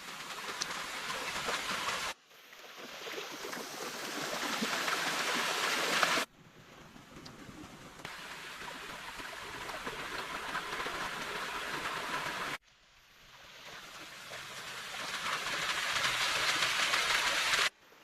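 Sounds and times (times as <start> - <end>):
stream rushing: 0.0 - 6.3, 8.1 - 12.6.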